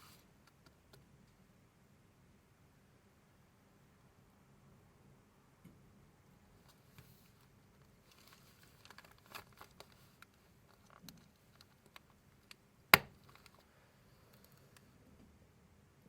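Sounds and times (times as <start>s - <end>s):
paper rustling: 8.0s - 11.0s
ring binder clicks: 13.0s - 13.6s.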